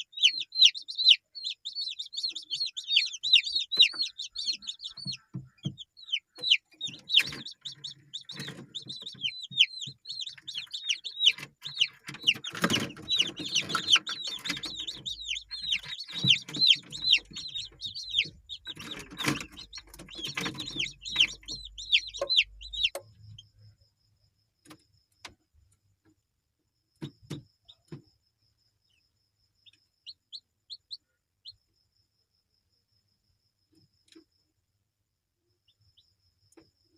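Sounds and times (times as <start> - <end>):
chickens clucking: 0.0 - 23.4
chicks peeping: 0.0 - 23.8, 29.6 - 31.6.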